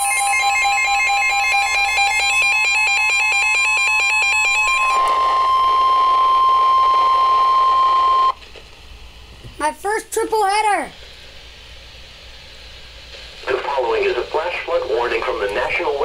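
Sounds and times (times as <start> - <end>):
warbling digital data burst: 0.0 - 5.0
steady alert tone: 0.0 - 5.6.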